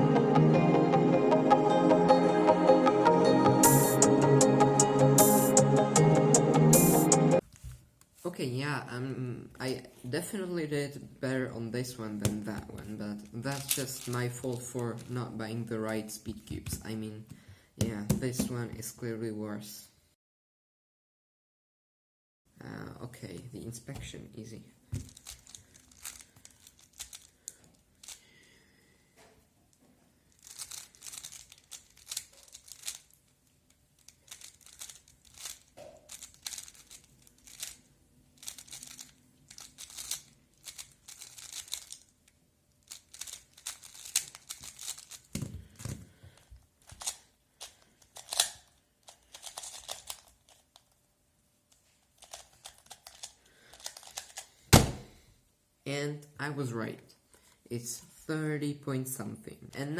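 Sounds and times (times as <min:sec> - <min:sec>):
puzzle cube clicking and rattling: 0:12.3 - 0:15.2, 0:25.0 - 0:28.2, 0:30.3 - 0:46.0, 0:46.8 - 0:51.0, 0:51.8 - 0:54.6.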